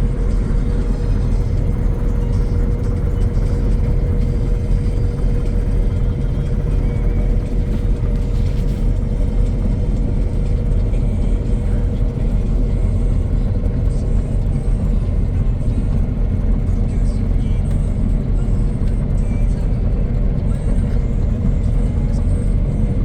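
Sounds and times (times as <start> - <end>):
mowing machine engine rumble: 0.0 - 12.8
faint steady whine: 0.0 - 23.0.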